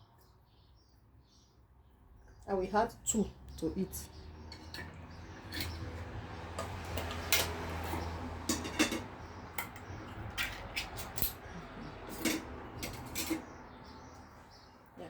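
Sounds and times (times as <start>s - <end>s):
utensil clinking on can and bowl: 6.6s - 13.5s.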